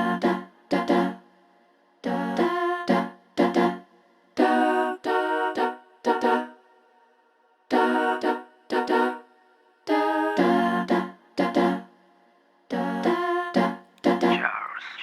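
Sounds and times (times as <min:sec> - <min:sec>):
short sung phrases: 0:12.7 - 0:15.0.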